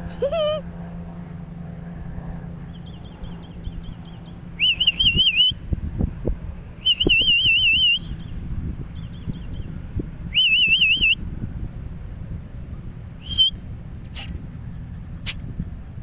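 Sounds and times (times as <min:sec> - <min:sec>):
songbird singing: 0:00.2 - 0:05.6, 0:06.8 - 0:09.7, 0:10.3 - 0:11.2, 0:13.2 - 0:14.3.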